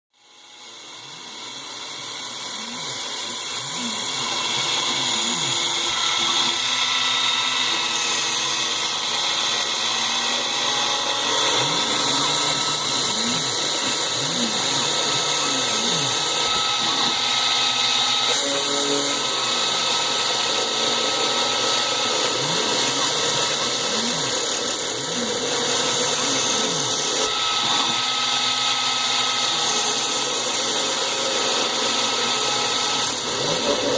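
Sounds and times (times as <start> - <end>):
milling spindle whine: 0.2 - 33.9
axis motors sweeping in pitch: 10.6 - 19.4.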